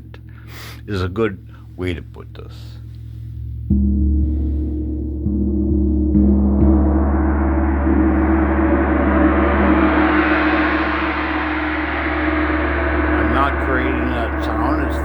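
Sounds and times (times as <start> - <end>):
gong ringing: 6.6 - 15.0.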